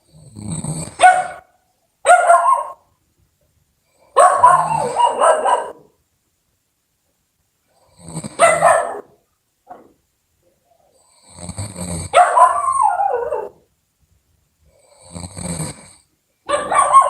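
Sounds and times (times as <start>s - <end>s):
loud snoring: 0.0s - 1.0s, 7.9s - 8.4s, 11.0s - 12.2s, 14.7s - 16.1s.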